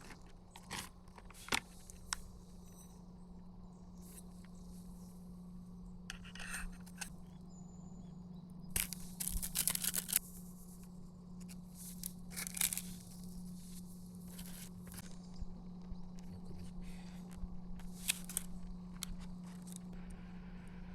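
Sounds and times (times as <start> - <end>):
rustling and crinkling handling: 0.0 - 2.3, 8.7 - 20.0
low steady hum: 0.0 - 20.9.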